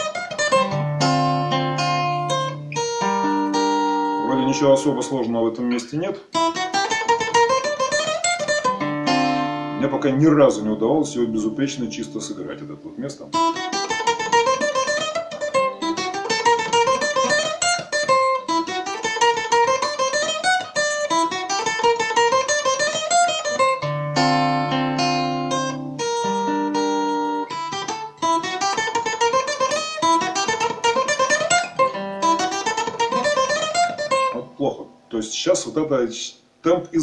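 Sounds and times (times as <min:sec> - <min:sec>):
acoustic guitar scale runs: 0:02.6 - 0:05.9.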